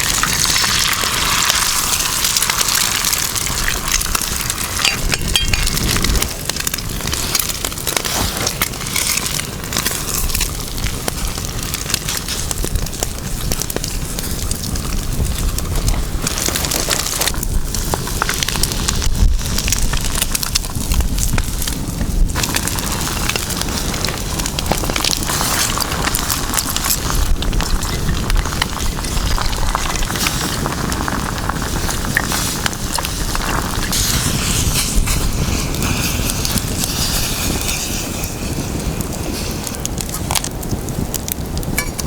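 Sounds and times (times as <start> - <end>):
campfire crackling with pops: 0.0 - 42.0.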